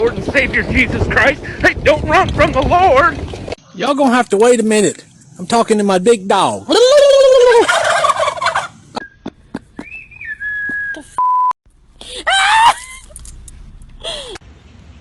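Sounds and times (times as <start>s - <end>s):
turkey gobbling: 6.8s - 10.1s
whistle-like tone: 9.9s - 11.5s.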